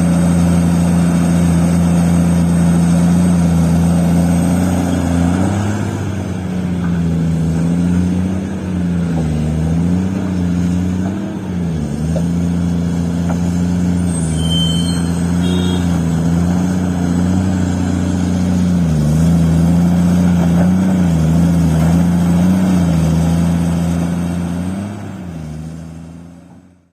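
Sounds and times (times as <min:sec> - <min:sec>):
heavy diesel engine running: 0:00.0 - 0:26.9
short high squeal: 0:13.9 - 0:16.0.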